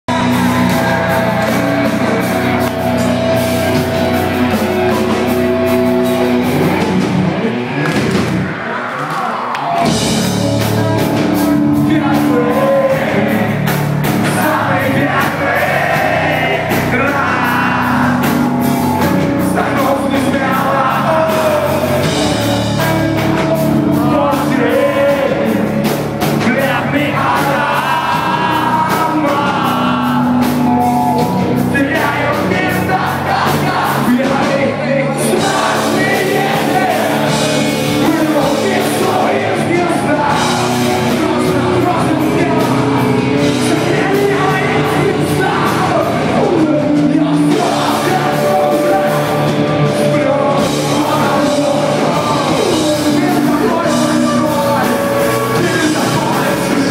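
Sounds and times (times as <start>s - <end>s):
steady drum beat: 0.1s - 8.5s, 9.8s - 56.9s
guitars: 0.1s - 56.9s
person singing: 9.0s - 56.9s.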